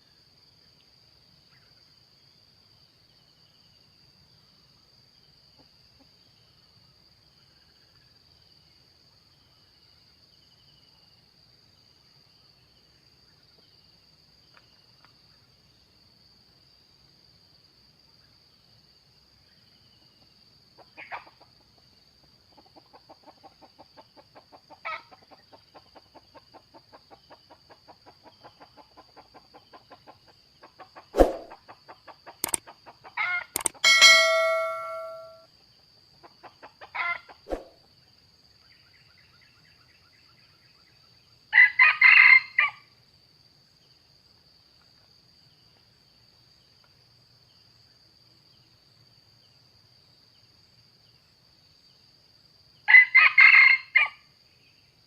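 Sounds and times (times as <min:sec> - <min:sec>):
junglefowl calling and clucking: 0:20.8 - 0:21.8, 0:22.5 - 0:35.4, 0:36.2 - 0:37.7, 0:41.5 - 0:42.8, 0:52.9 - 0:54.2.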